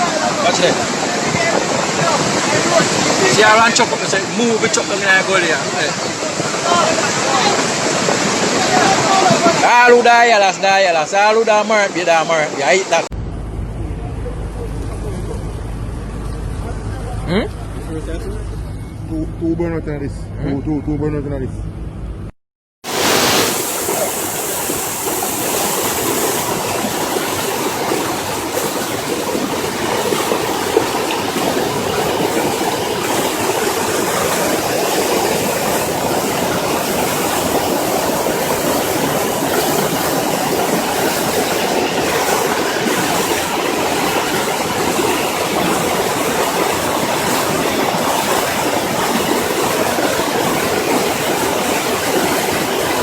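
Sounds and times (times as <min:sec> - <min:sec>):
floodwater rushing: 0:00.0 - 0:19.2, 0:22.8 - 0:53.0.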